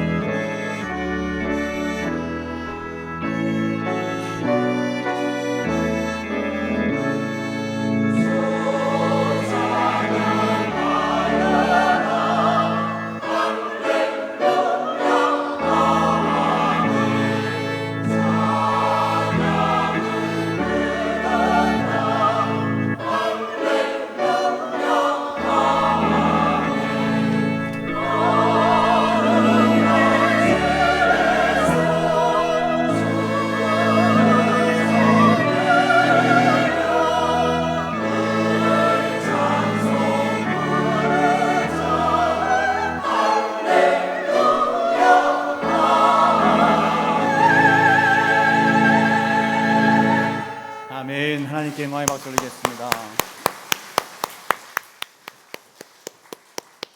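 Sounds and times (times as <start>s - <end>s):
sustained low accompaniment: 0.0s - 13.3s, 25.2s - 52.9s
choir singing a hymn: 0.0s - 51.4s.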